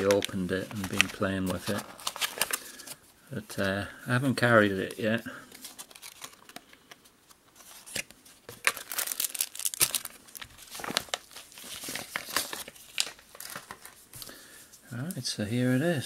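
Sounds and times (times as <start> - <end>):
packaging crinkling and rustling: 0.0 - 3.0, 5.0 - 14.3.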